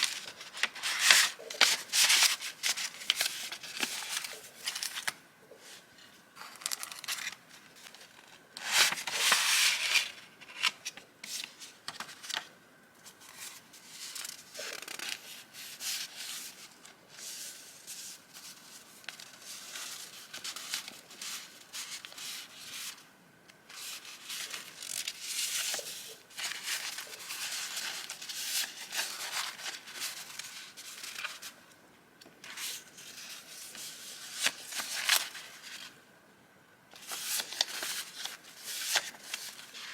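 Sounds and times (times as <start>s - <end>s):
paper rustling: 0.0s - 5.2s, 6.4s - 12.5s, 23.7s - 31.6s, 32.4s - 36.0s, 36.9s - 39.9s.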